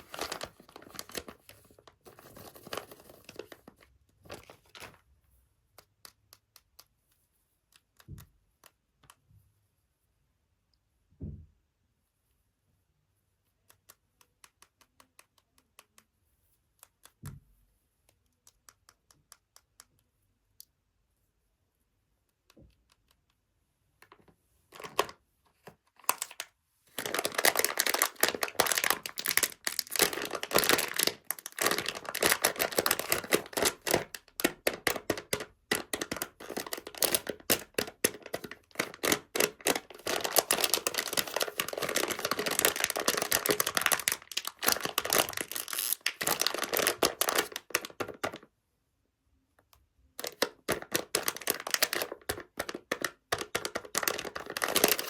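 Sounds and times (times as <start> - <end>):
plastic wrapper crinkling and tearing: 0.0 - 5.0, 26.0 - 48.5, 50.2 - 55.0.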